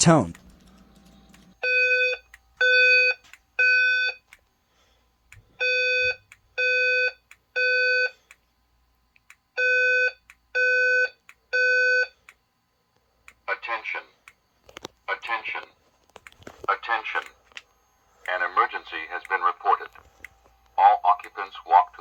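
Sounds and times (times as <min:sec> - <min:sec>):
fire alarm buzzy beeps: 0:00.2 - 0:04.4, 0:05.6 - 0:08.2, 0:09.5 - 0:12.2.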